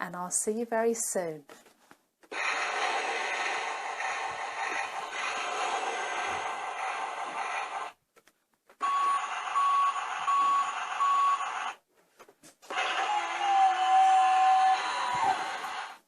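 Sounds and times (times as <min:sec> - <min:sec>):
reversing beeps: 0:08.8 - 0:11.5.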